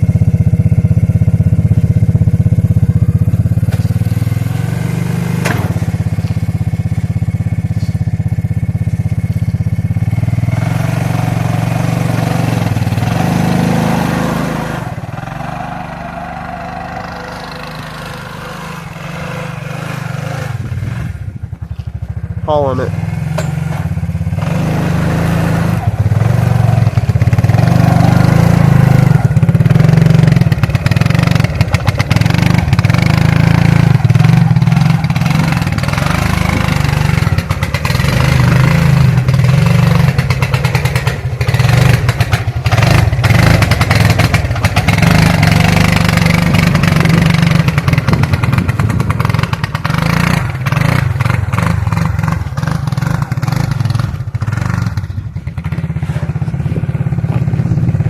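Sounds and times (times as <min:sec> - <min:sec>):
atv engine running hard: 0:00.0 - 0:58.0
knocks and clatter: 0:05.3 - 0:06.9, 0:23.2 - 0:24.6.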